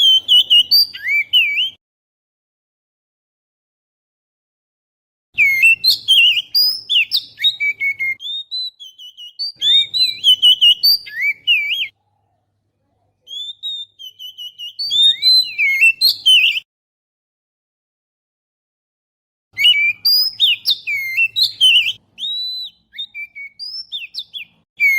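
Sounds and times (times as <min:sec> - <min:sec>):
bird singing whistled notes: 0:00.0 - 0:01.8, 0:05.4 - 0:12.0, 0:13.3 - 0:16.7, 0:19.6 - 0:24.9.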